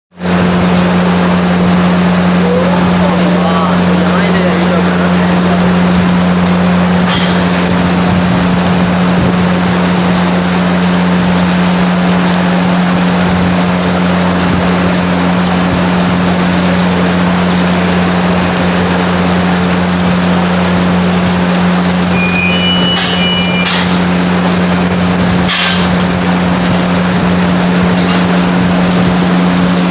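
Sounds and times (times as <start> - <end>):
engine low hum: 0.2 - 29.9
loud rushing noise: 0.2 - 29.9
short high chirps: 22.1 - 24.0.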